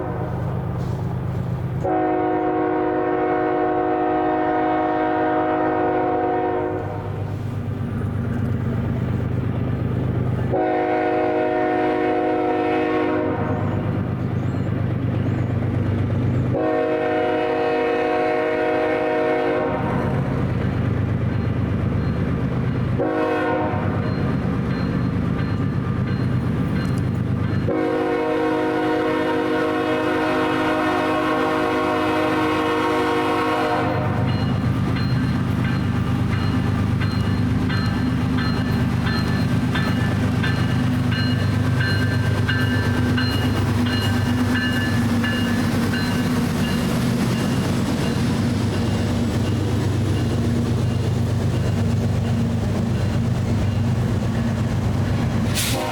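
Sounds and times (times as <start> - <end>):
locomotive air horn blasts: 0.0 - 0.9, 1.8 - 7.4, 10.5 - 13.8, 16.5 - 20.4, 23.0 - 24.1, 27.7 - 34.6, 55.5 - 55.9
passing train rumble: 0.0 - 55.9.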